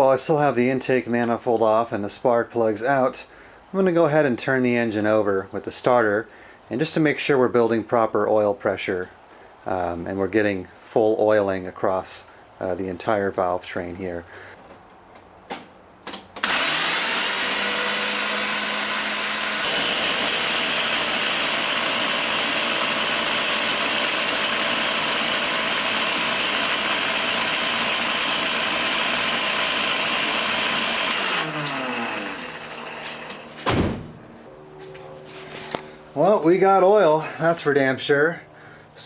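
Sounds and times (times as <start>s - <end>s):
starter motor whirring engine: 16.1s - 35.0s
engine winding down: 16.4s - 34.5s.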